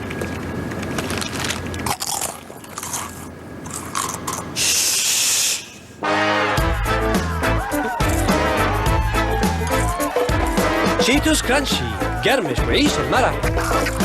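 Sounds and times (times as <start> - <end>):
crunchy snacks being crunched: 1.2 - 4.5
loud hissing whoosh: 4.6 - 6.0
music: 6.0 - 14.0.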